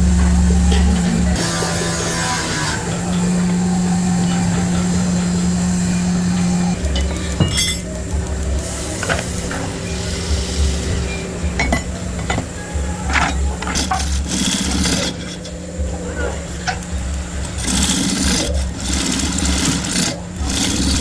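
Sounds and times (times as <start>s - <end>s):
workshop machine humming: 0.0s - 21.0s
tools knocking and clinking: 6.8s - 9.7s.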